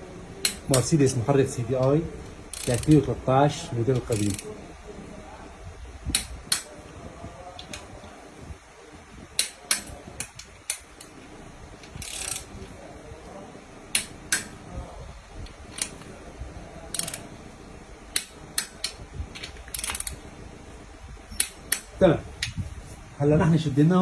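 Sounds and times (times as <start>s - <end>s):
torque wrench ratcheting and clicking: 2.5s - 3.1s, 4.0s - 4.5s, 11.8s - 12.5s, 15.4s - 16.0s, 16.9s - 17.3s, 18.1s - 20.2s.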